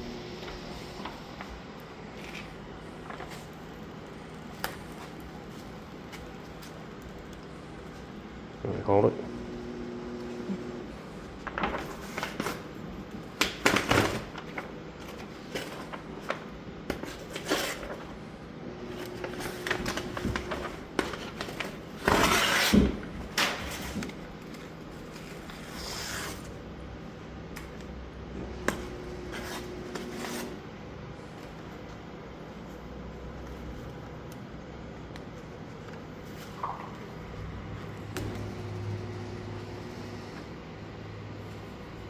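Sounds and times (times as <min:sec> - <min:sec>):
vinyl decal peeling and crinkling: 0:00.4 - 0:08.4, 0:10.8 - 0:18.2, 0:19.0 - 0:26.7.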